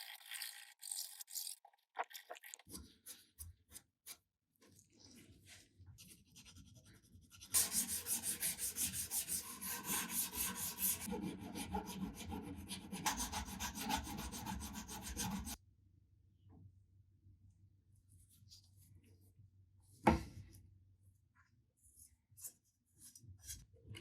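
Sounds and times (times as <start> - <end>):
sandpaper rubbing on metal: 7.6 - 11.1.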